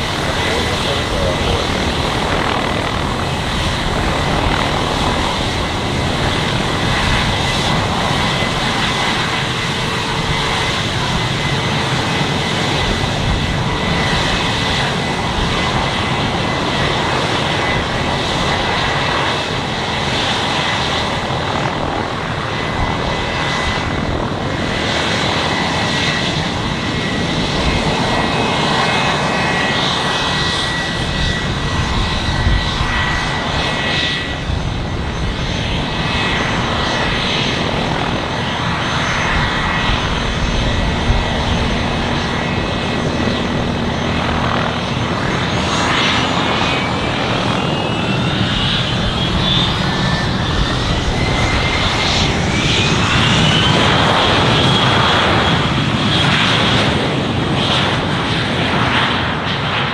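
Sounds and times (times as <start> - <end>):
aircraft engine running: 0.0 - 59.9
thin high whine: 35.8 - 49.5.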